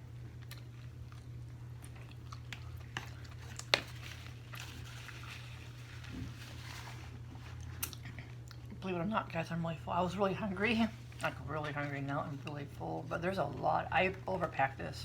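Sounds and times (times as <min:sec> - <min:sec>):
steady low hum: 0:00.0 - 0:15.0
chewing and mouth sounds: 0:00.2 - 0:05.5, 0:07.5 - 0:08.8.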